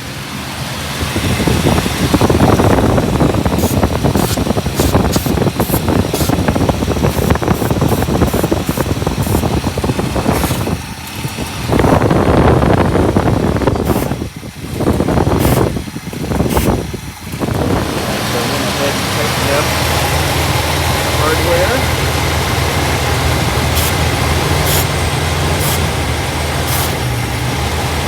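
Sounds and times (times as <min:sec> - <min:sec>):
car engine running: 0:00.0 - 0:28.0
short spray hisses: 0:03.6 - 0:06.4, 0:23.8 - 0:24.0, 0:24.6 - 0:24.9, 0:25.6 - 0:25.9, 0:26.7 - 0:27.0.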